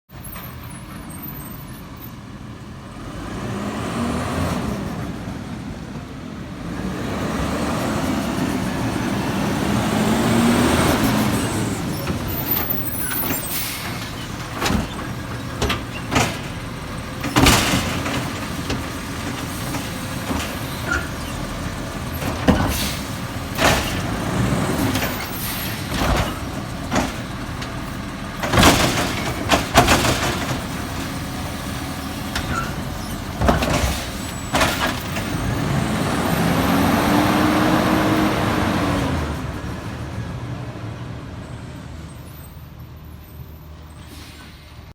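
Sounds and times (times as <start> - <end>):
garbage truck engine revving: 2.8 - 5.7, 6.5 - 41.2
sharp metal clanks and bangs: 12.0 - 21.4, 28.4 - 30.9.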